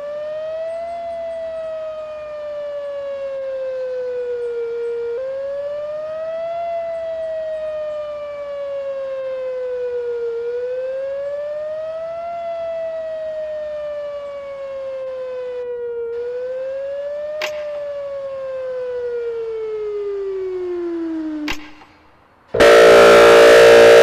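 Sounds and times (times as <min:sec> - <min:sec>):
warning siren wailing: 0:00.0 - 0:24.0.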